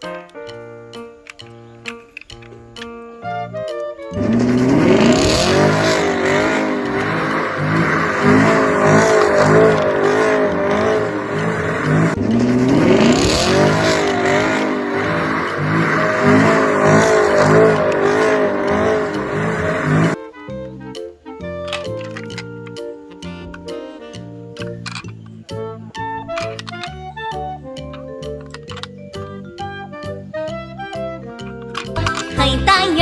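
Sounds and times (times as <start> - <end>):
racing car engine revving: 4.1 - 20.2.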